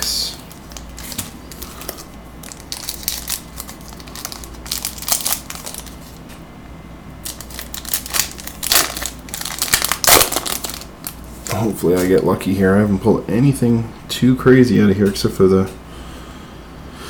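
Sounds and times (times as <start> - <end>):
card pack wrapper crinkling and tearing: 0.0 - 6.3, 7.2 - 12.2.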